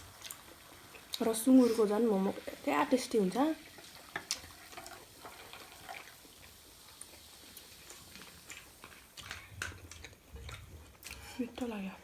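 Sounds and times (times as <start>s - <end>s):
chewing with wet mouth clicks: 7.0s - 11.3s.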